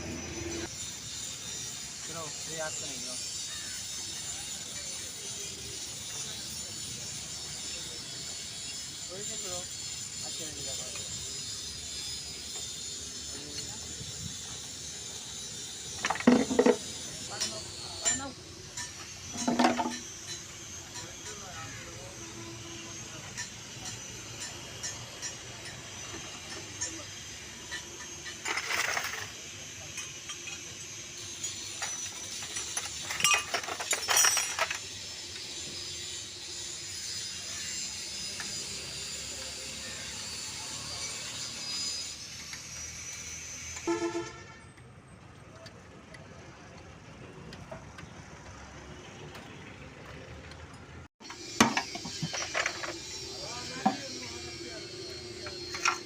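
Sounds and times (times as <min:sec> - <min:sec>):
metal tools clinking: 0:00.3 - 0:21.7, 0:22.9 - 0:39.7, 0:51.3 - 0:56.0
distant road traffic rumble: 0:44.4 - 0:51.1.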